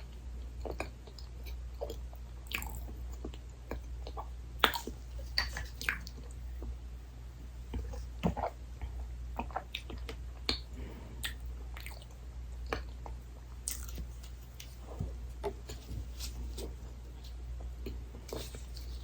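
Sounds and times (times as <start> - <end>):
mouth chewing soft food: 0.0 - 6.8, 7.6 - 19.0.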